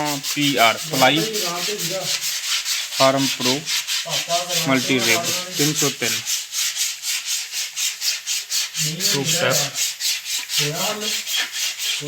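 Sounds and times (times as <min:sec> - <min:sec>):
man's voice: 0:00.0 - 0:02.2, 0:03.0 - 0:06.2, 0:08.8 - 0:09.8
rapid scrubbing strokes: 0:00.0 - 0:12.0.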